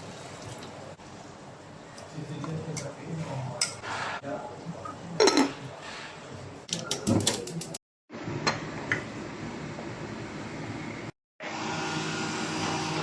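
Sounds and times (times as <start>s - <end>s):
utensils clinking against dishes: 5.2s - 6.1s, 6.7s - 7.8s.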